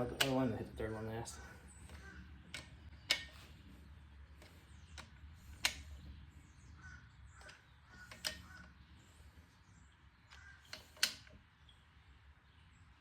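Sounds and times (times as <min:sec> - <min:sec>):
torque wrench clicks: 0:00.0 - 0:00.6, 0:01.8 - 0:03.6, 0:04.3 - 0:06.1, 0:07.3 - 0:08.8, 0:10.3 - 0:11.4.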